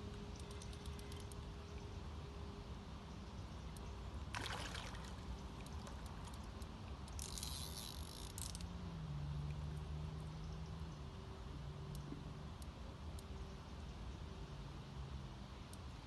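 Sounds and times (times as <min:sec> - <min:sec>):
low steady hum: 0:00.0 - 0:16.0
water trickling and splashing: 0:04.2 - 0:07.2.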